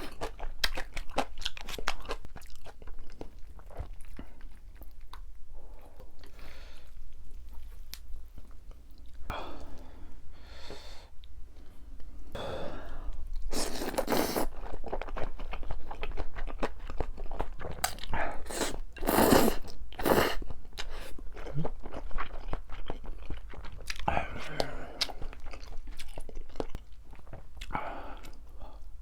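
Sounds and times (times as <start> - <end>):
person crunching and chewing: 0.0 - 5.3, 13.3 - 28.4.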